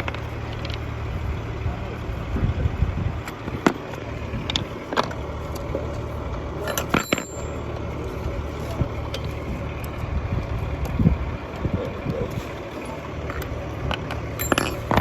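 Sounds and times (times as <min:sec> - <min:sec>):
low rumble: 0:00.0 - 0:06.6
sharp metallic clicks and knocks: 0:06.6 - 0:07.9, 0:13.3 - 0:15.0.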